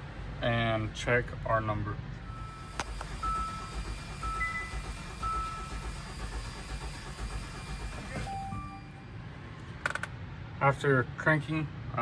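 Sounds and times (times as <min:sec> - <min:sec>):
engine cranking on starter: 0:02.2 - 0:08.8.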